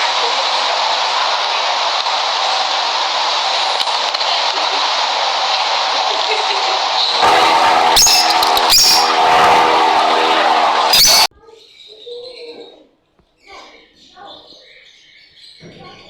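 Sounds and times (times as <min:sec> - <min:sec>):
sharp high chirps: 0:07.2 - 0:11.3
steady tones: 0:07.2 - 0:11.3.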